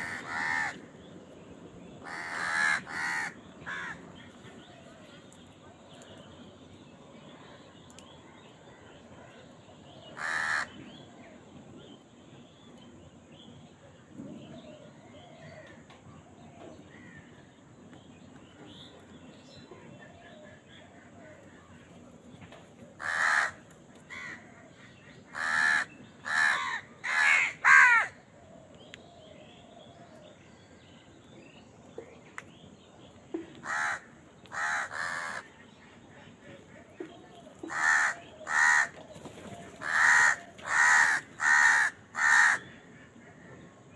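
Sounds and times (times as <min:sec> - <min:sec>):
crow cawing: 0:00.0 - 0:00.8, 0:02.0 - 0:04.1, 0:10.2 - 0:10.8, 0:23.0 - 0:24.6, 0:25.3 - 0:28.2, 0:33.6 - 0:35.6, 0:37.7 - 0:39.0, 0:39.8 - 0:43.5.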